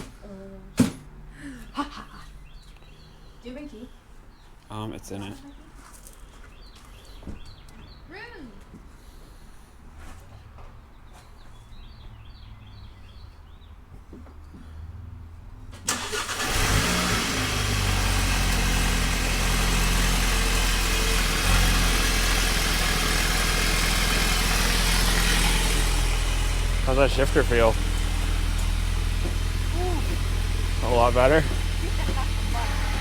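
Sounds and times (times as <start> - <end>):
car engine starting and idling: 15.8 - 33.0.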